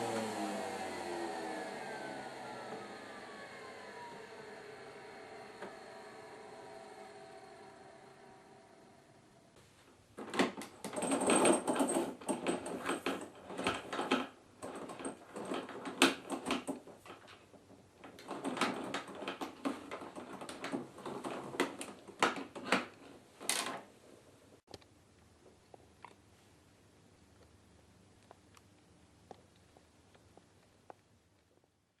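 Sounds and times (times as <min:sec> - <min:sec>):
parts clicking and knocking: 0:10.2 - 0:23.9.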